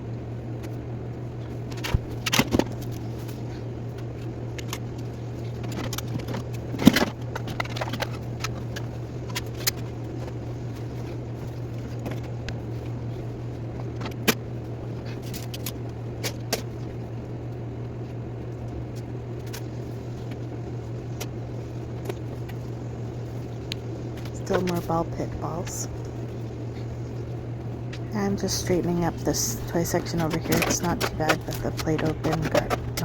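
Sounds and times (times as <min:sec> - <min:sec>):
steady low hum: 0:00.0 - 0:33.0
clicks and knocks of handled items: 0:05.6 - 0:10.4, 0:29.6 - 0:33.0.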